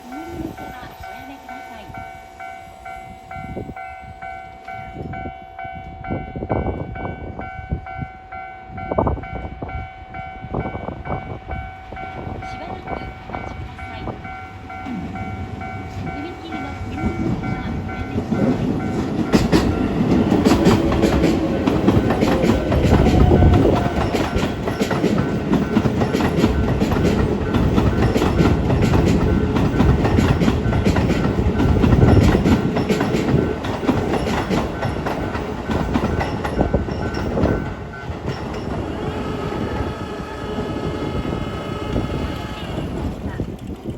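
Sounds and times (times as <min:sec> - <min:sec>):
crossing warning bell ringing: 0:00.0 - 0:43.3
train wheels clattering over rail joints: 0:14.2 - 0:40.0.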